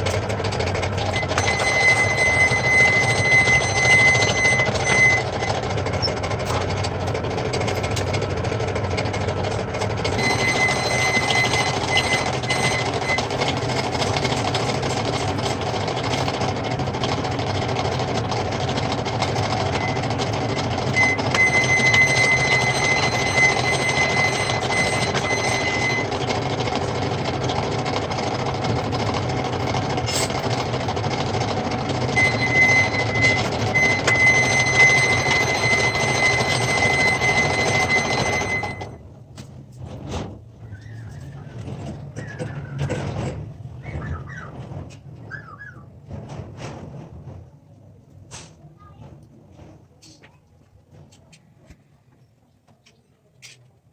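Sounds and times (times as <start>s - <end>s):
thin high whine: 0.0s - 6.6s, 10.0s - 16.3s, 18.6s - 27.0s, 31.7s - 39.0s
metal lathe cutting: 0.0s - 39.0s.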